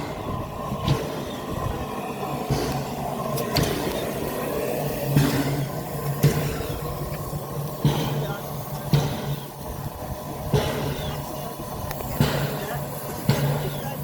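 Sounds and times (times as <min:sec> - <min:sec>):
train rumble and hum: 0:00.0 - 0:14.0
sharp metal clanks and knocks: 0:05.1 - 0:09.7, 0:10.5 - 0:14.0.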